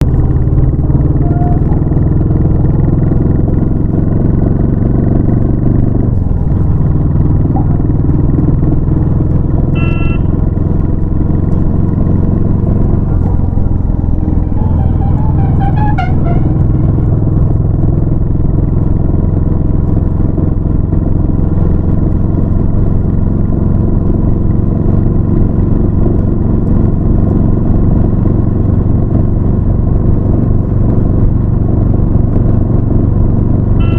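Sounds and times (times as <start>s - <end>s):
motorcycle engine running: 0.0s - 33.9s
warbling tone: 0.8s - 2.4s, 6.3s - 8.2s, 12.7s - 17.6s
short horn beep: 1.2s - 1.8s, 9.8s - 10.4s, 14.4s - 17.2s.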